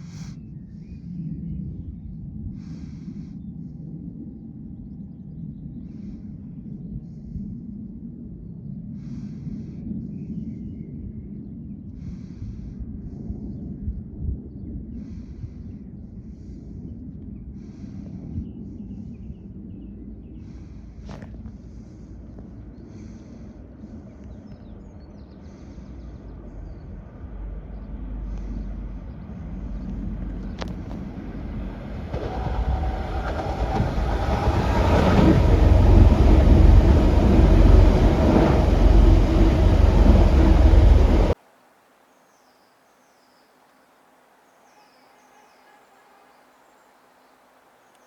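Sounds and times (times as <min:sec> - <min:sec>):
faint birdsong: 0:14.5 - 0:41.4, 0:42.1 - 0:48.0
diesel train passing: 0:25.7 - 0:41.4.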